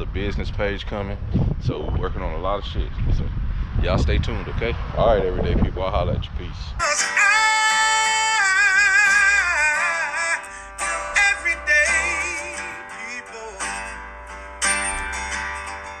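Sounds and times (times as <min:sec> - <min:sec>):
guitar: 0:06.7 - 0:16.0
person singing with vibrato: 0:06.8 - 0:14.0.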